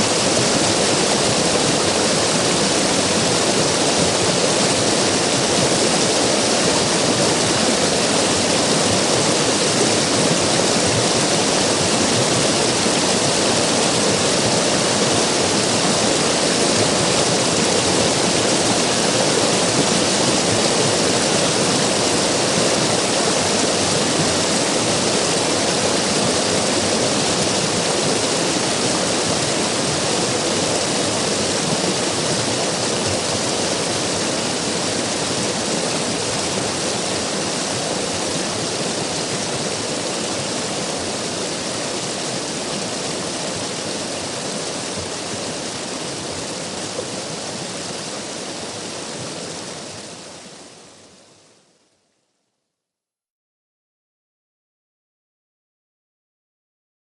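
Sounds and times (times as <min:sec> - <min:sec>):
river water rushing: 0:00.0 - 0:51.7.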